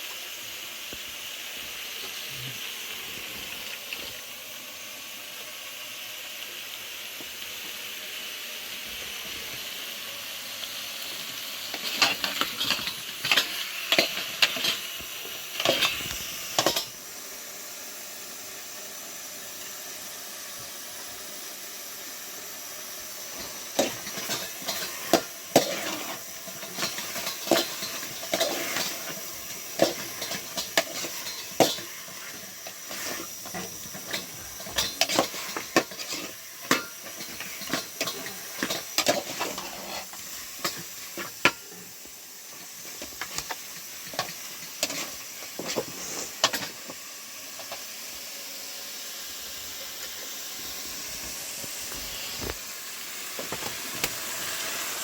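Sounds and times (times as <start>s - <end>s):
steady hiss: 0.0s - 55.0s
dishes and utensils clattering: 11.7s - 17.0s, 23.3s - 41.9s, 42.6s - 46.9s.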